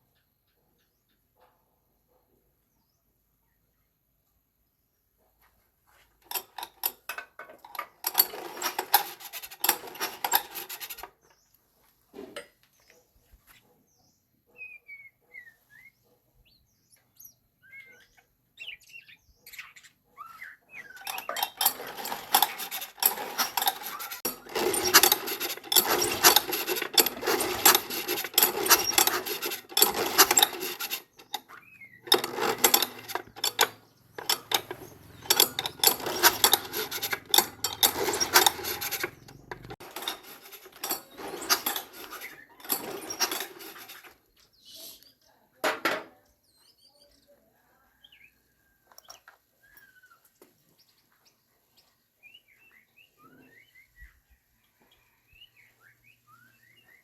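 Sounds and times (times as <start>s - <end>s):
hand tools scraping metal: 6.2s - 11.2s, 20.8s - 44.2s.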